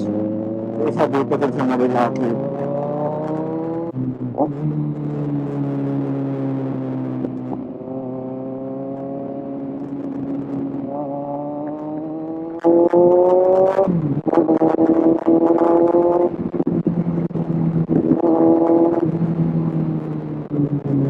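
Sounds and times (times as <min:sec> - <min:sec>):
motorcycle engine accelerating: 0:00.0 - 0:21.0
choppy buffeting wind: 0:08.9 - 0:21.0.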